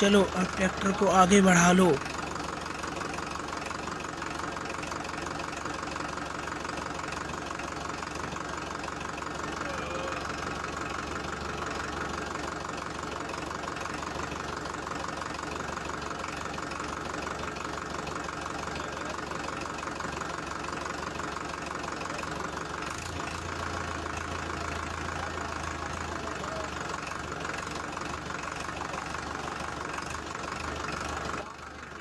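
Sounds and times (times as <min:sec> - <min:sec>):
tractor engine running: 0:00.0 - 0:09.4, 0:26.7 - 0:32.0.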